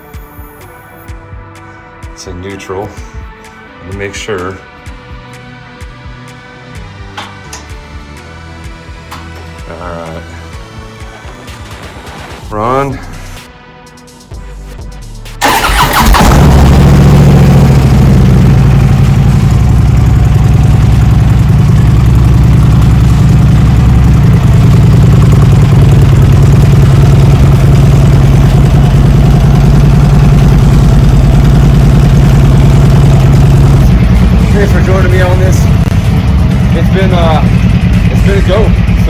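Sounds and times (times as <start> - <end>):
starter motor cranking: 15.4 - 17.3
motorcycle engine idling: 15.4 - 39.0.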